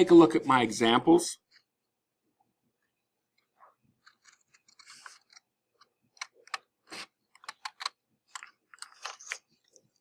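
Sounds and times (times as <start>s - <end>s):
paper rustling and crackling: 8.3s - 10.0s.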